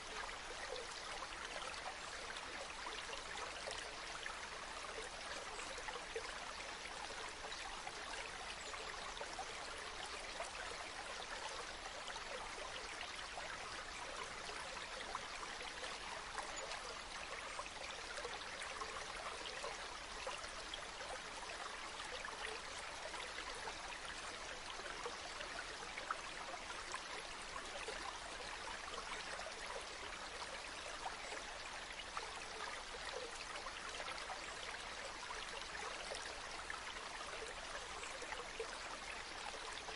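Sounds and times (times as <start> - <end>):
stream water over stones: 0.0 - 39.9.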